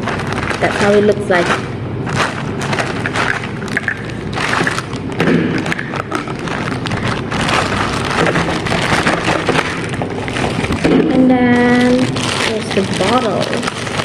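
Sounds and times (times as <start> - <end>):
packaging rustling and crinkling: 0.0 - 14.0.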